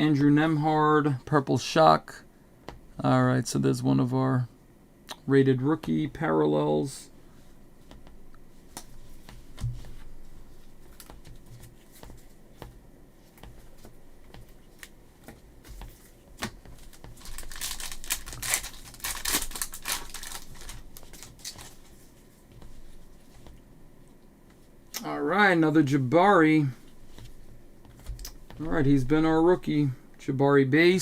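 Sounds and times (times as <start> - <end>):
cards ticking and tapping: 13.4 - 21.8
foil wrapper tearing and crinkling: 16.8 - 21.9.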